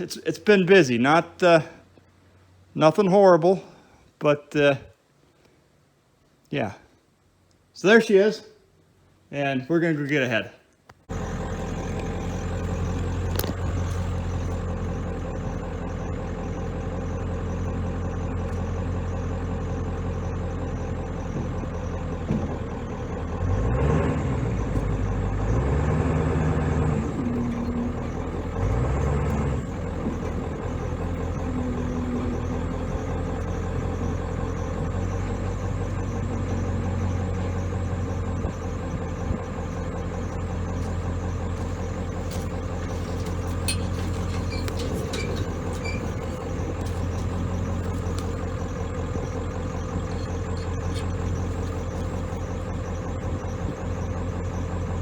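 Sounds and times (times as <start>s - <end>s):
vehicle engine running: 11.1s - 55.0s.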